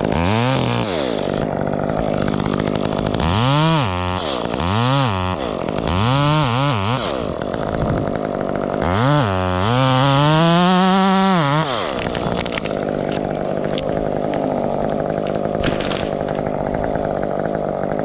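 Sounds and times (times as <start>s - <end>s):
chainsaw revving: 0.0s - 18.0s.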